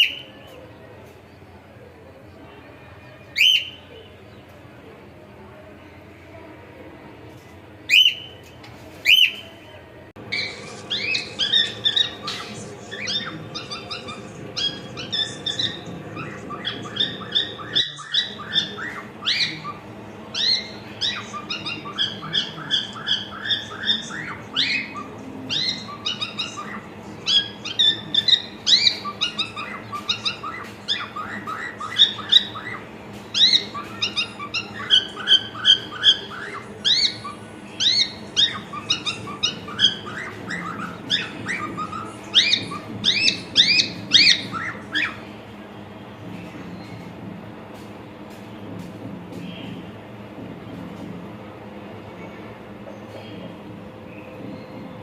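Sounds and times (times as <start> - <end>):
cockatiel calling and chirping: 10.4 - 19.8, 20.4 - 45.2.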